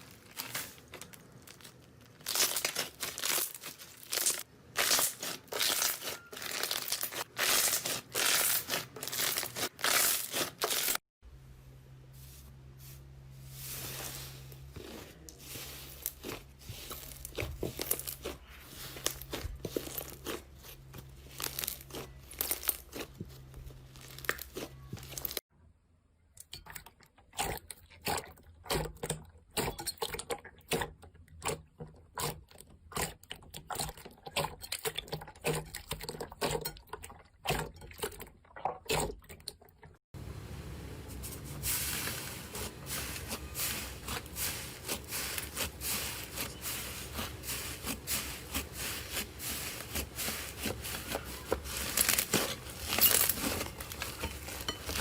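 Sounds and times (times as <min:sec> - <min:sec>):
slime squelching and crackling: 0:00.0 - 0:11.0, 0:13.5 - 0:25.4, 0:41.2 - 0:55.0.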